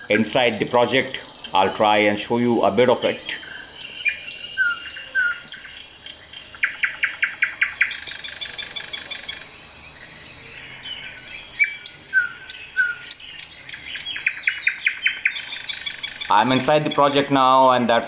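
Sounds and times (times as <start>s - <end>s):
bird chips: 0.0s - 1.9s, 3.8s - 9.5s, 11.0s - 17.4s
buzzy bird call: 0.0s - 17.4s
birds singing and calling: 0.0s - 18.0s.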